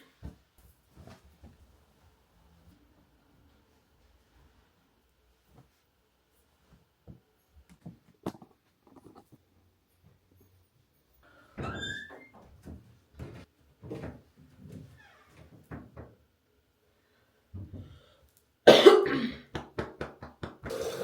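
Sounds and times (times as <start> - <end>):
person coughing: 18.7 - 19.5.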